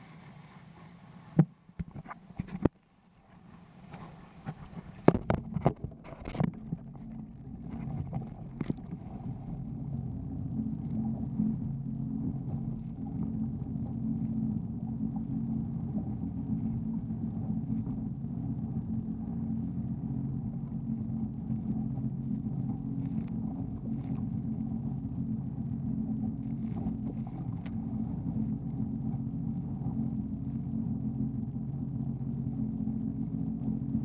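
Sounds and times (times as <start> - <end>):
jet ski engine running: 0.0 - 34.0
faint ticks: 10.8 - 11.4, 20.5 - 30.8.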